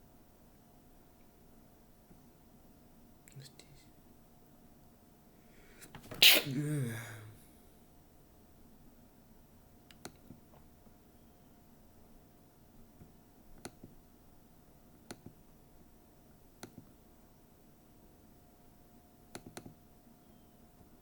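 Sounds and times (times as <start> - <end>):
faint steady hum: 0.0 - 21.0
computer mouse clicks: 9.9 - 10.4, 13.6 - 14.0, 15.0 - 15.4, 16.6 - 16.9, 19.3 - 19.8.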